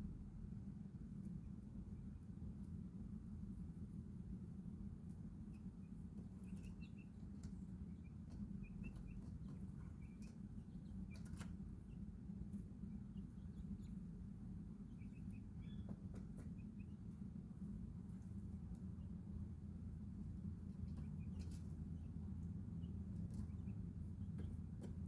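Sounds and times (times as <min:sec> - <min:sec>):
baby chicks peeping: 0:00.0 - 0:25.0
low background hum: 0:00.0 - 0:25.0.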